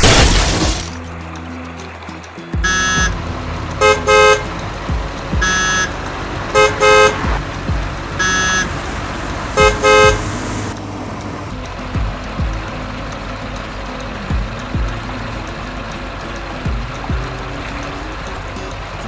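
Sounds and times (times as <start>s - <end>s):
higher-pitched beep: 2.6s - 3.2s, 5.3s - 6.0s, 8.2s - 8.7s
vehicle horn double honks: 2.6s - 10.8s
low thumping background: 2.6s - 13.1s, 16.7s - 17.6s.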